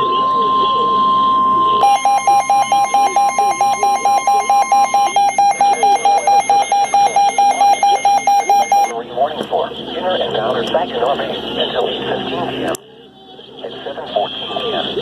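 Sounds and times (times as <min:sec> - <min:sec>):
electronic alarm beeping: 0:00.0 - 0:08.9
steady alert tone: 0:00.0 - 0:08.9.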